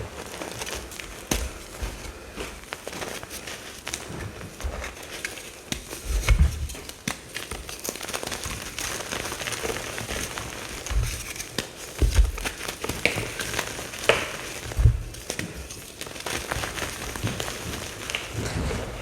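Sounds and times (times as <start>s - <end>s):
dry crunchy crackling: 0.0s - 19.0s
low thuds: 14.8s - 15.2s.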